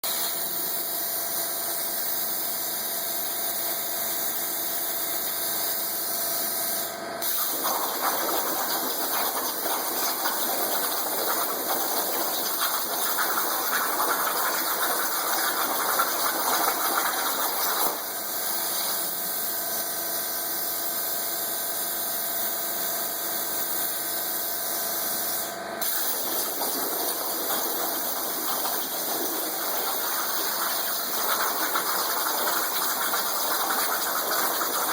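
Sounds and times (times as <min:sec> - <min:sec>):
plasma arc rushing hiss: 0:00.1 - 0:02.2, 0:04.3 - 0:21.0, 0:23.1 - 0:34.9
machine whine: 0:25.8 - 0:34.9.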